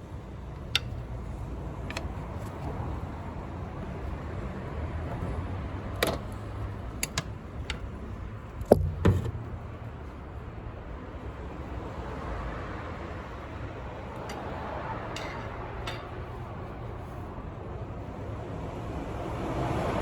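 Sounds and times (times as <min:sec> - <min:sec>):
tools clicking and clinking: 0:00.5 - 0:02.8, 0:05.9 - 0:08.0, 0:14.2 - 0:16.5
loud knocks: 0:08.7 - 0:09.6.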